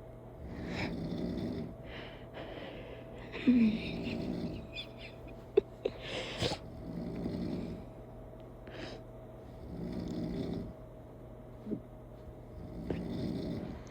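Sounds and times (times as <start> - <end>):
low snore: 0.4 - 1.8, 3.5 - 4.7, 6.4 - 7.9, 9.5 - 10.8, 12.4 - 13.9
hissing breath: 5.9 - 6.7.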